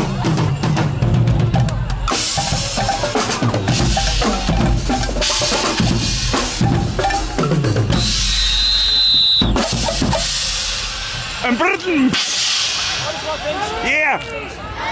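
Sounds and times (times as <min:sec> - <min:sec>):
bass and snare drum beating: 0:00.0 - 0:13.4
carnival band music: 0:00.0 - 0:14.5
high steady tone: 0:02.1 - 0:10.2.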